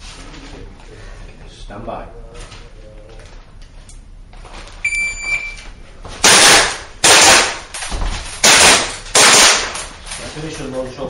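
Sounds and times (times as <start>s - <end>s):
shot timer beep: 4.8s - 5.6s
pistol shots echoing indoors: 6.2s - 10.0s.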